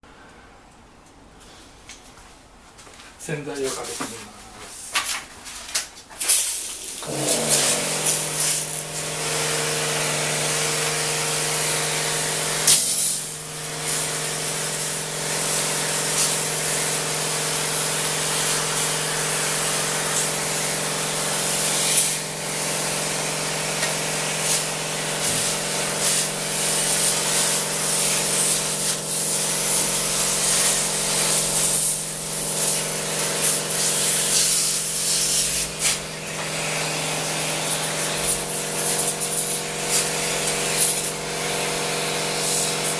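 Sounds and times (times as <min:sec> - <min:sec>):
pressure washer spray hiss: 0:06.3 - 0:42.9
pump motor humming: 0:06.8 - 0:42.9.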